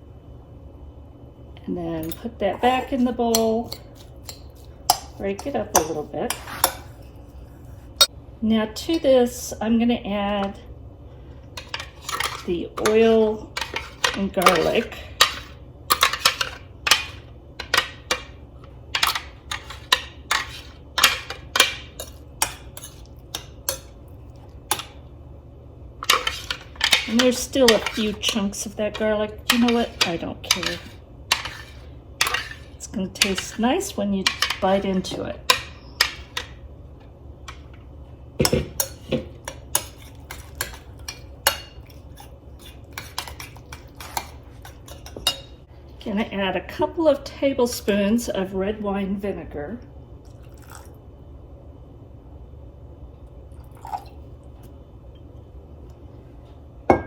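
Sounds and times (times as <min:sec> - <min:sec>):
utensil clinking against a bowl: 0:02.0 - 0:07.1, 0:11.6 - 0:24.0, 0:26.0 - 0:33.6, 0:34.2 - 0:36.6, 0:38.4 - 0:45.6
utensil clinking against bowl: 0:26.0 - 0:33.6.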